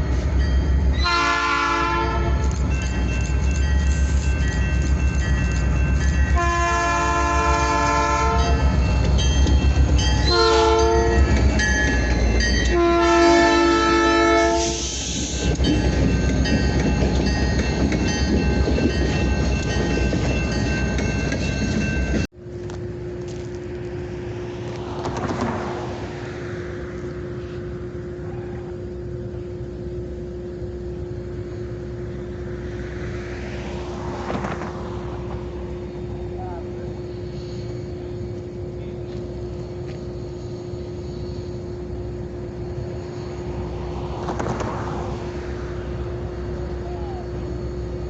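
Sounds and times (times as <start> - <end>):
diesel locomotive engine throbbing: 0.0 - 48.0
locomotive horn blasts: 1.0 - 2.6, 6.3 - 8.7, 10.2 - 11.4, 12.6 - 14.9.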